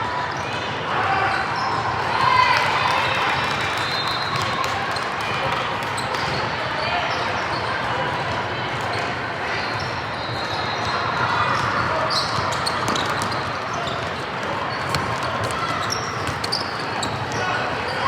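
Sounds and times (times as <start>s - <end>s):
din of spectators' voices: 0.0s - 18.0s
basketball bouncing on court: 11.6s - 18.0s.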